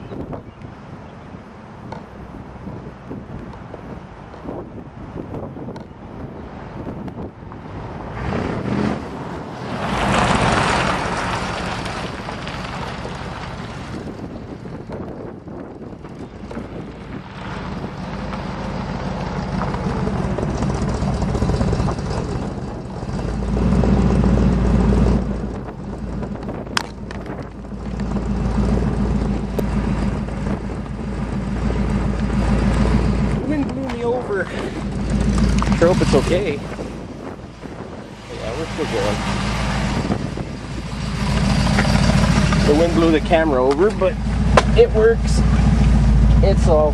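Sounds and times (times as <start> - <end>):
wind buffeting microphone: 0.0 - 46.9
car engine revving: 6.2 - 46.9.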